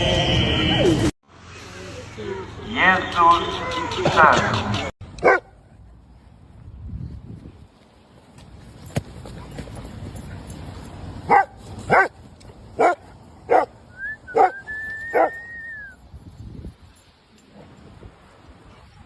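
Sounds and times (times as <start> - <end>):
dog barking: 5.2 - 5.5, 11.3 - 12.2, 12.8 - 13.7, 14.3 - 15.4.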